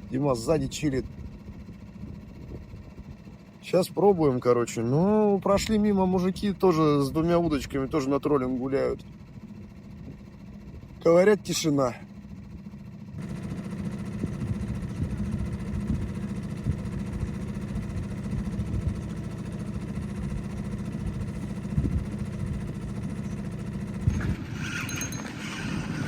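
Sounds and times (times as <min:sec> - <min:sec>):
outboard motor running: 0:00.0 - 0:26.0.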